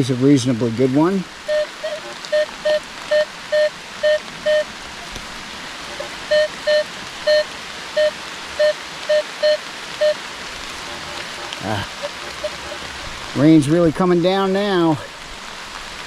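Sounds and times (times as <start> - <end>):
steady rain hiss: 0.0 - 16.0
metal detector beeps: 1.5 - 4.7, 5.9 - 10.2, 10.9 - 12.8.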